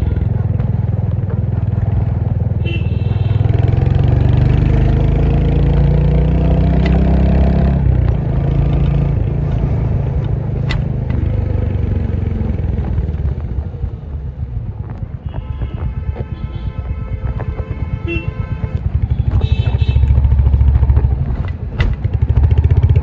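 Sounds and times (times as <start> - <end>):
motorcycle engine revving: 0.0 - 14.5, 18.2 - 23.0.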